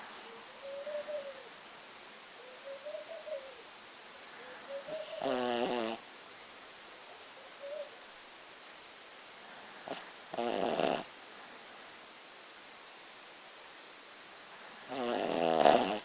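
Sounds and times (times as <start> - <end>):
dog rattling snore: 5.0 - 6.0, 9.9 - 11.1, 14.9 - 16.0.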